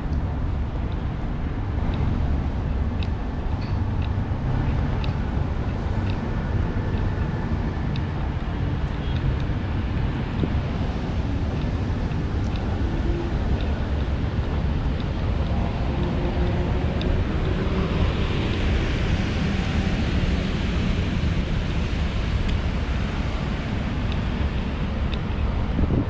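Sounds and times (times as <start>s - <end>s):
wind buffeting microphone: 0.0s - 26.0s
faint light ticks: 2.7s - 10.6s, 11.5s - 19.8s, 22.4s - 22.7s, 24.0s - 25.9s
steady rain hiss: 4.3s - 25.8s.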